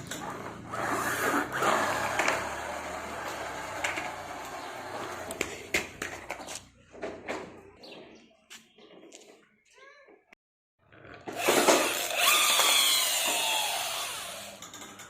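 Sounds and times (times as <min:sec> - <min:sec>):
toy vehicles whirring and rattling: 0:00.0 - 0:06.5, 0:11.0 - 0:15.0.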